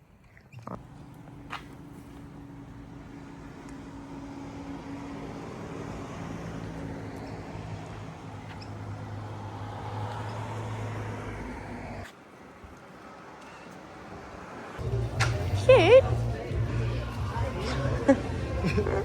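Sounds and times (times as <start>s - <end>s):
road noise: 0.0s - 19.0s
vehicle engine droning: 0.6s - 12.1s, 13.6s - 19.0s.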